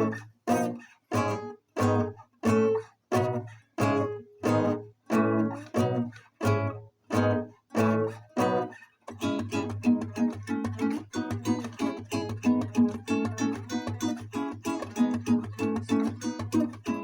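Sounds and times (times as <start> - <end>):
strummed guitar chords: 0.0 - 17.0.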